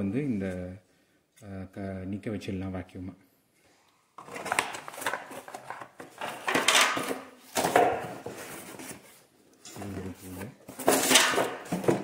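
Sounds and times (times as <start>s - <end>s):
plastic parts clicking and clattering: 4.2s - 8.2s, 10.7s - 12.0s.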